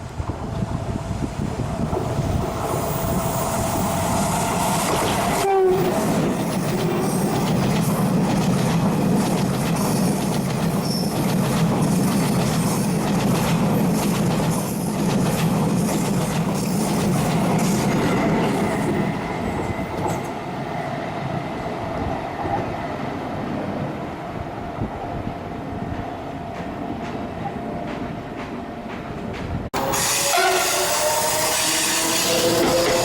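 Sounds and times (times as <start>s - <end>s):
train wheels over rail joints: 0.0s - 21.4s, 24.8s - 33.0s
train horn: 5.3s - 7.4s, 29.8s - 33.0s.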